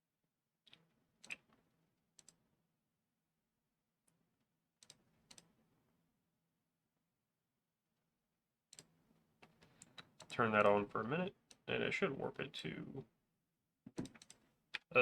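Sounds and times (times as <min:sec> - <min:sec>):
computer mouse and keyboard clicks: 0:00.6 - 0:01.6, 0:02.2 - 0:02.4, 0:04.8 - 0:05.5, 0:13.9 - 0:14.4.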